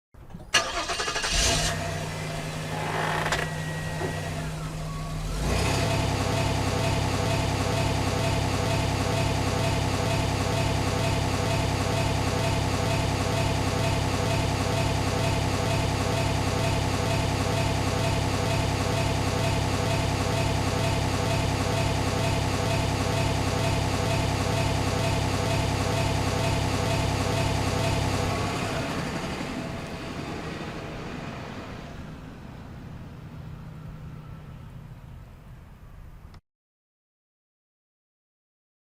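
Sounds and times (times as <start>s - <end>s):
old car engine idling: 0.5s - 31.2s.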